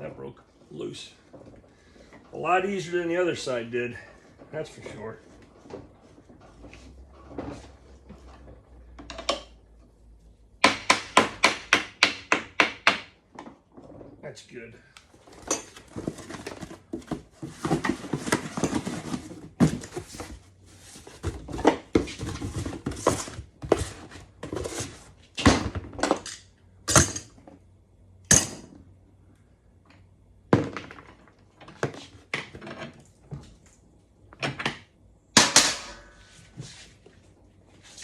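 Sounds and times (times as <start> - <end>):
tools clanking on metal: 15.3 - 16.3.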